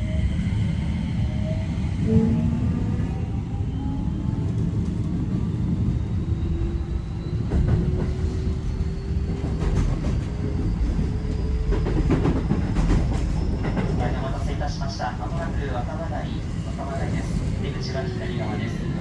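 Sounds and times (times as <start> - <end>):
train wheels rumbling on rail: 4.2 - 19.0.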